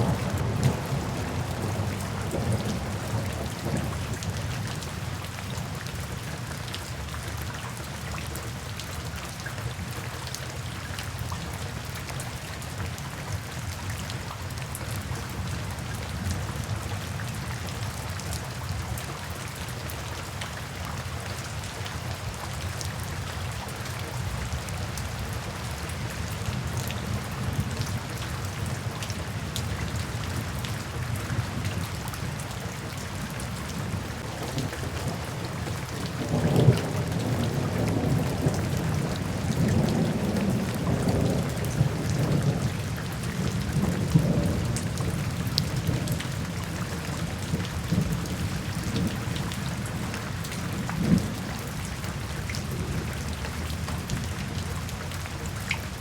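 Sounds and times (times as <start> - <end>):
thunder cracking and rumbling: 0.0 - 4.6, 33.8 - 46.2
steady rainfall: 0.0 - 56.0.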